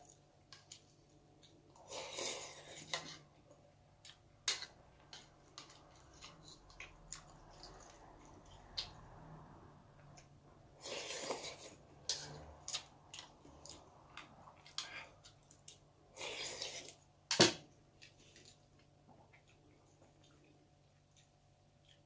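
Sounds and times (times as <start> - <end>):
chewing: 4.0 - 9.0, 10.8 - 17.0, 18.0 - 22.0.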